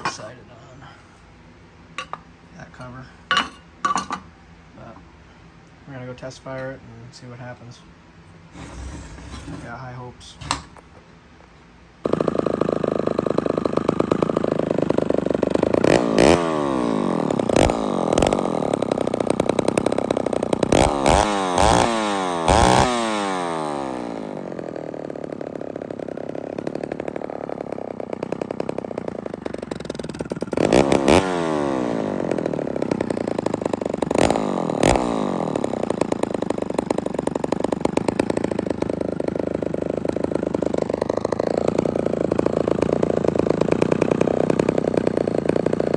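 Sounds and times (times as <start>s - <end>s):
chainsaw engine revving and idling: 8.5s - 10.8s, 12.0s - 45.9s.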